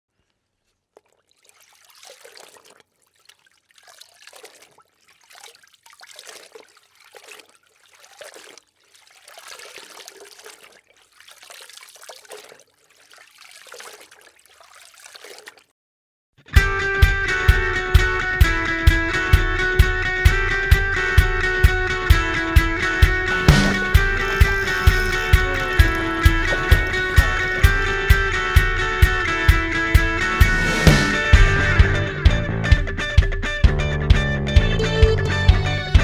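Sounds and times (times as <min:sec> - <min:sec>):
water splashing in bursts: 0:01.0 - 0:15.7, 0:21.0 - 0:32.0.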